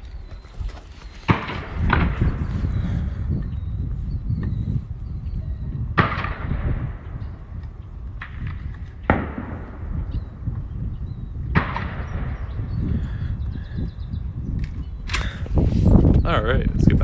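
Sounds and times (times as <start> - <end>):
wind rumble on microphone: 0.0 - 17.0
shotgun shots: 1.3 - 2.4, 6.0 - 7.3, 8.2 - 10.3, 11.5 - 12.7.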